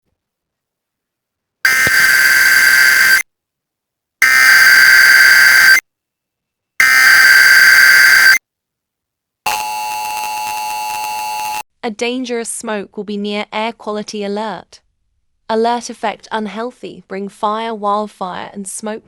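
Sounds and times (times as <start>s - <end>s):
buzzing data bursts: 1.7s - 3.2s, 4.2s - 5.8s, 6.8s - 8.4s, 9.5s - 11.6s
two-tone attention signal: 1.7s - 3.2s, 4.2s - 5.8s, 6.8s - 8.4s, 9.5s - 11.6s.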